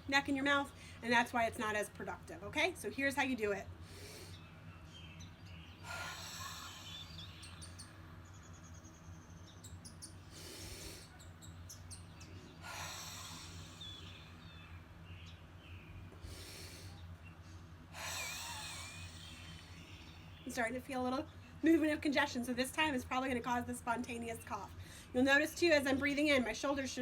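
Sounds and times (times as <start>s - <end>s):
steady low hum: 0.0s - 27.0s
woman breathing deeply: 3.8s - 4.5s, 5.8s - 7.5s, 10.2s - 11.2s, 12.5s - 14.5s, 16.1s - 17.0s, 17.9s - 20.2s
faint bird chirps: 4.2s - 21.6s.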